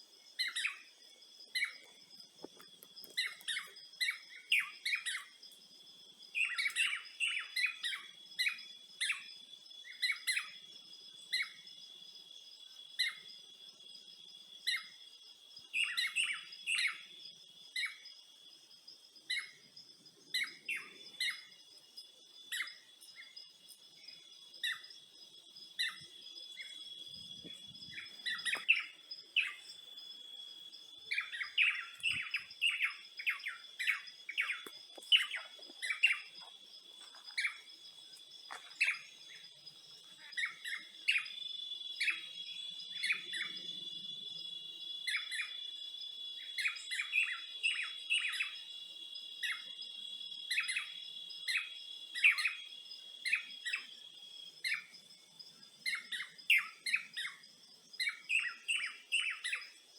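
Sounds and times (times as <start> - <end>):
high-pitched insect trill: 0.0 - 59.9
birds chirping: 6.4 - 9.3, 19.3 - 49.7.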